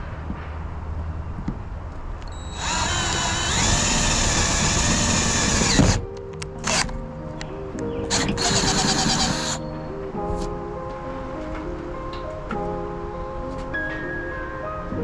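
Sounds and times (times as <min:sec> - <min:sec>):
sharp clicks: 0:02.2 - 0:09.6
power drill whining: 0:02.4 - 0:06.0, 0:06.6 - 0:06.9, 0:08.1 - 0:09.6.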